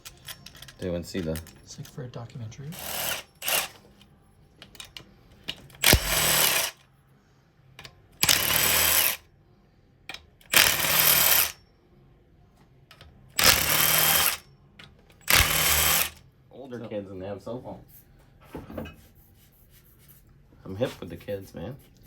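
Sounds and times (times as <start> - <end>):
impact wrench whining bursts: 2.8 - 3.8, 5.8 - 6.8, 8.2 - 9.2, 10.5 - 11.6, 13.4 - 14.4, 15.2 - 16.2.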